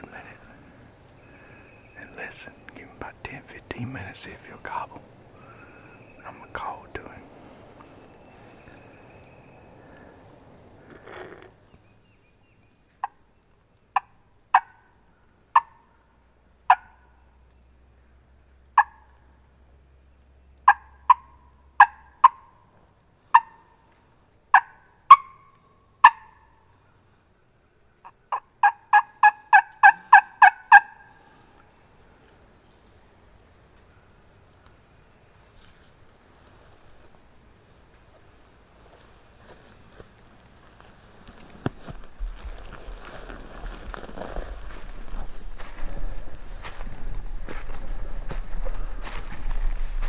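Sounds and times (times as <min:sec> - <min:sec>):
turkey call notes: 0:15.5 - 0:15.9, 0:18.8 - 0:19.1, 0:20.6 - 0:22.6, 0:23.3 - 0:23.9, 0:24.5 - 0:26.7, 0:28.0 - 0:31.3.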